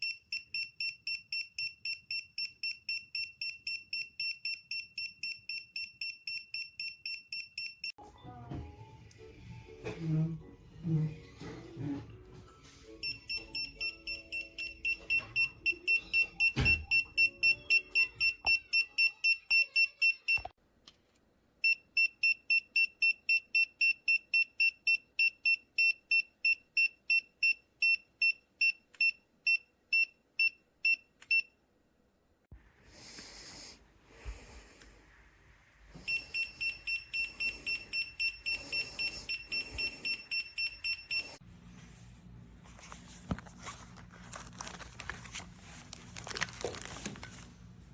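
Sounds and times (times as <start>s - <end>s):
fast high alarm beeps: 13.0s - 20.4s, 36.1s - 41.4s.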